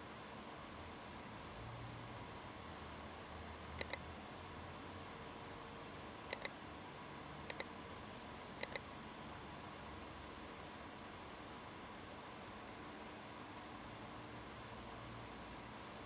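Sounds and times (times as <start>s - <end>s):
sharp double clicks: 3.8s - 4.0s, 6.3s - 6.5s.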